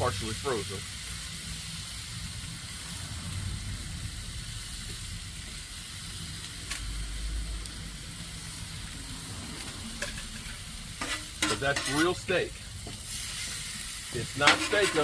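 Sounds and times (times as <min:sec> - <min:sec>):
food sizzling in a pan: 0:00.0 - 0:15.0
low rumble: 0:01.4 - 0:11.4.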